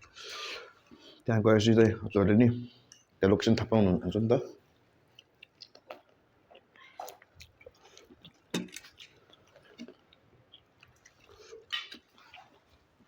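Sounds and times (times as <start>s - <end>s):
person chewing food: 4.7s - 13.0s.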